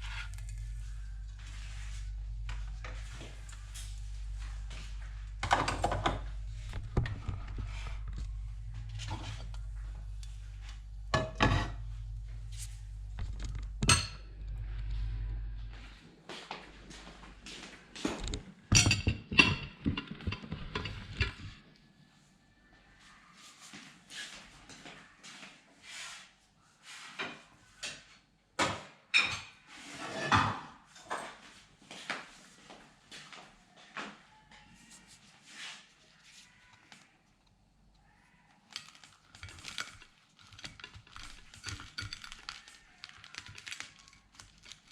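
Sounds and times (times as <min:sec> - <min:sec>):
rustling: 0:00.0 - 0:13.8
steady low hum: 0:00.0 - 0:21.6
kitchen knocks and clatters: 0:05.4 - 0:08.3, 0:11.0 - 0:11.9, 0:13.2 - 0:14.3, 0:18.1 - 0:21.6, 0:27.2 - 0:31.5.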